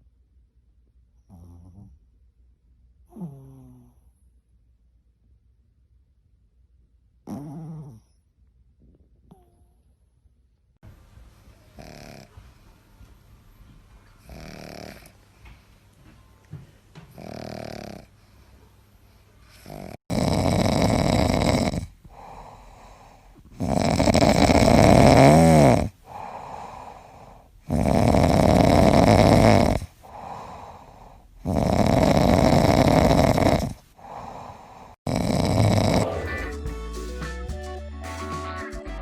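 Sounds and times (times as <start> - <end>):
dog snoring: 1.2 - 2.1, 3.1 - 4.2, 7.2 - 8.2, 11.8 - 12.4, 14.2 - 15.2, 17.1 - 18.2, 19.5 - 36.7.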